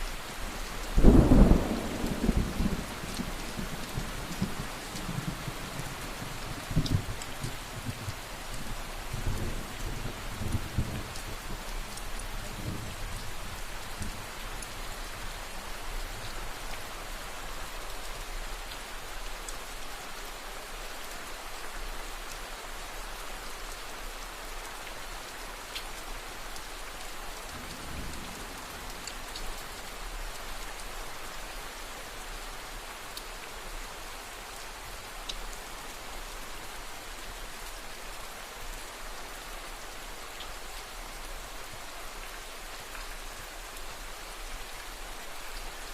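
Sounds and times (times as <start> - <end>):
heavy rain: 0.0 - 45.9
distant thunder rumble: 1.0 - 6.0.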